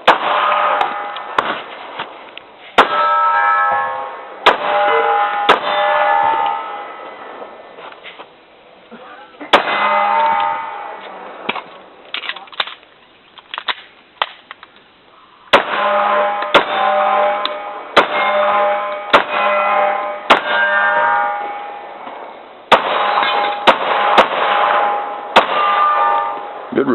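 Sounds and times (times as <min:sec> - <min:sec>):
pistol shots: 0:00.0 - 0:02.1, 0:02.8 - 0:03.1, 0:04.4 - 0:06.6, 0:09.5 - 0:11.7, 0:15.5 - 0:20.6, 0:22.7 - 0:26.7
metallic ringing: 0:02.8 - 0:07.8, 0:09.6 - 0:11.4, 0:15.7 - 0:26.7.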